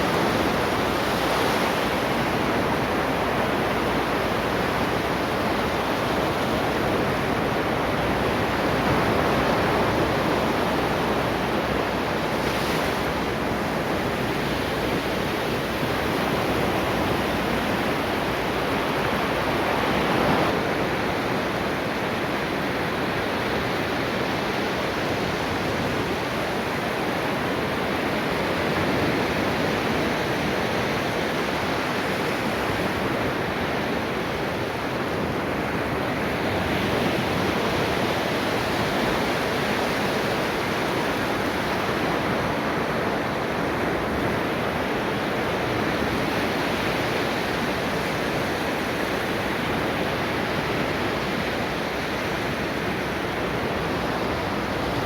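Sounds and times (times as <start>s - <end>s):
ocean waves on a beach: 0.0s - 55.0s.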